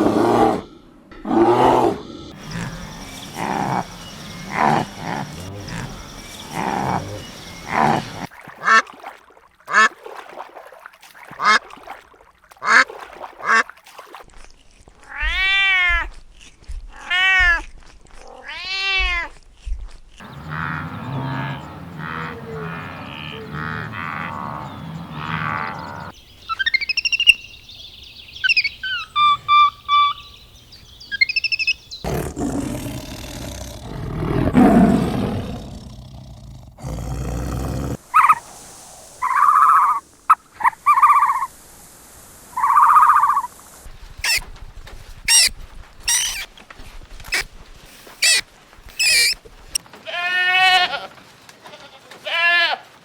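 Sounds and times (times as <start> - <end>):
low rough animal call: 0.0 - 8.3, 20.2 - 26.1, 32.0 - 41.5, 46.1 - 46.5, 47.3 - 48.4, 49.0 - 49.4
gliding animal chirps: 0.2 - 8.3, 31.1 - 36.6, 44.2 - 44.4, 45.3 - 45.5, 46.1 - 46.5, 47.3 - 48.4, 49.0 - 49.4
short repeated animal calls: 1.6 - 8.3, 44.2 - 44.4, 45.3 - 45.5, 46.1 - 46.5, 47.3 - 48.4, 49.0 - 49.4.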